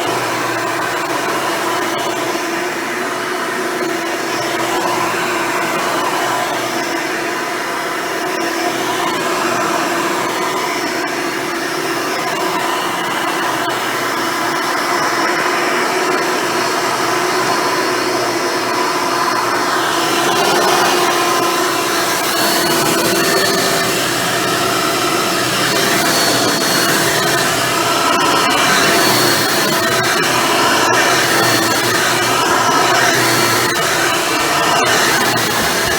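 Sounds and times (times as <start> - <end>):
upright vacuum cleaner running: 16.6 - 35.9.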